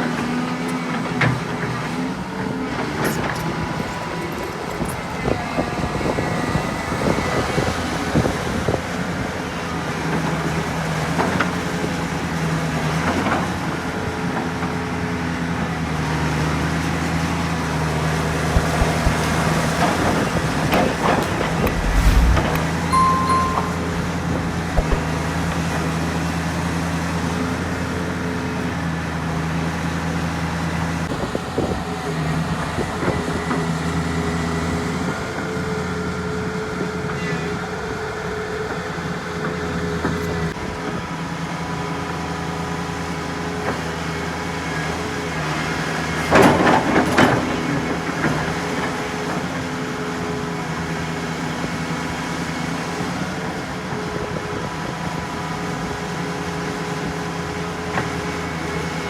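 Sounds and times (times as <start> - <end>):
brief beep: 21.7 - 24.2, 24.8 - 25.0.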